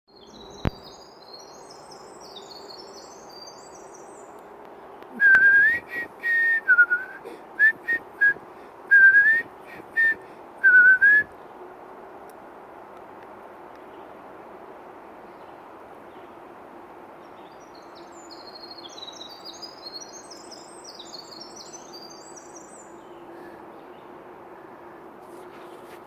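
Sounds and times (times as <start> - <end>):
songbird singing: 0.1 - 25.8
person whistling: 5.2 - 11.3.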